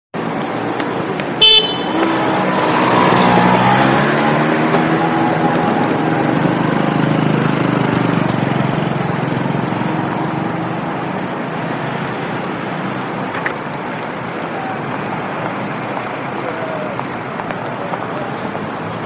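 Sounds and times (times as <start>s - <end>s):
passing vehicle engine hum: 0.2s - 19.0s
traffic and tyre noise: 0.2s - 19.0s.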